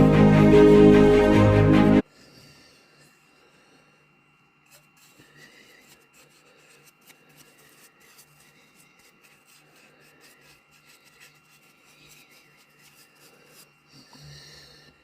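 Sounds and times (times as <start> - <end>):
hand tool scraping wood: 4.7 - 15.0.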